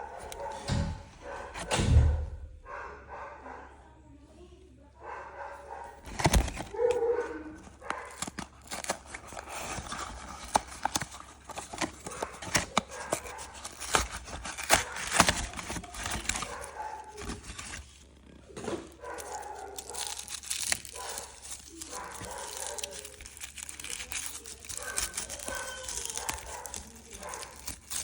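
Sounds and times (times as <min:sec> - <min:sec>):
packaging clicks and taps: 0:06.0 - 0:18.0, 0:18.6 - 0:28.0.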